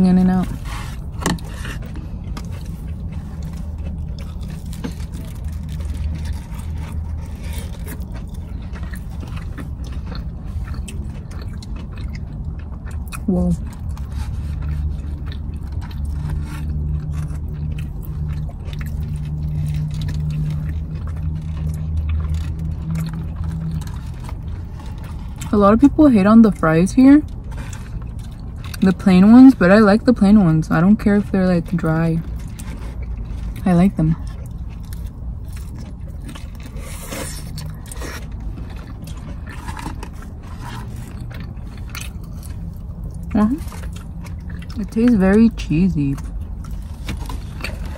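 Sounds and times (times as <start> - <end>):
person chewing food: 0.0 - 29.9, 31.1 - 47.9
scraping and rustling of fries: 0.0 - 47.9
steady low hum: 0.0 - 47.9
steady low rumble: 0.0 - 47.9
paper wrapper crackling: 3.6 - 8.3.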